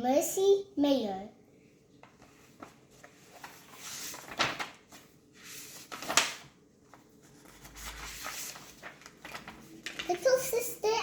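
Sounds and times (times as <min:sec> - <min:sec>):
book pages turning: 0:02.0 - 0:10.5.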